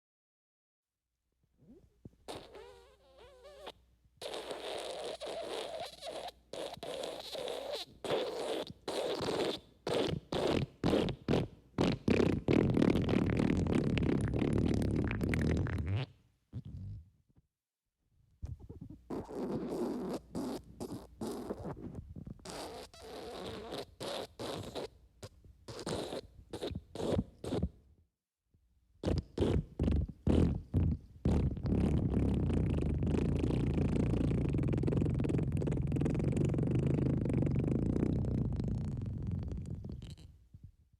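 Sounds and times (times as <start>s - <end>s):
wet fart sound effect: 1.7s - 17.0s, 18.5s - 24.9s, 25.7s - 27.7s, 29.0s - 40.3s.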